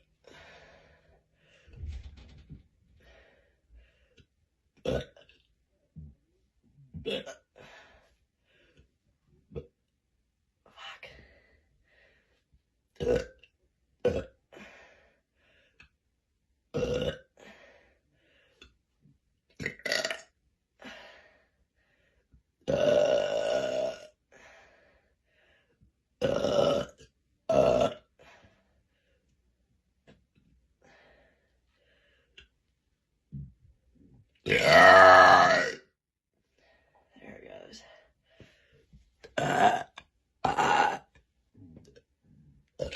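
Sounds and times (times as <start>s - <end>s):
woman burping: 7.0s - 7.5s, 13.0s - 14.4s, 16.7s - 17.3s, 19.6s - 20.3s, 22.7s - 24.1s, 26.2s - 28.0s, 34.4s - 35.8s, 39.3s - 41.1s.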